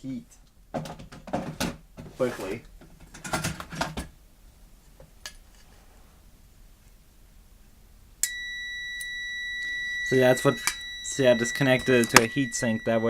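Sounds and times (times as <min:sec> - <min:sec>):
meter continuity beep: 0:08.2 - 0:13.0.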